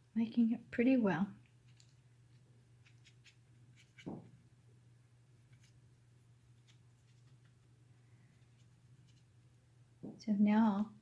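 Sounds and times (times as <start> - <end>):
paintbrush scratching on canvas: 1.5 - 4.3, 5.4 - 7.7, 8.3 - 9.4.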